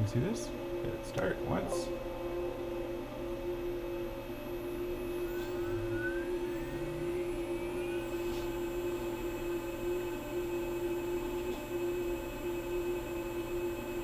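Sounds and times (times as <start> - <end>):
router spindle whine: 3.0 - 13.8.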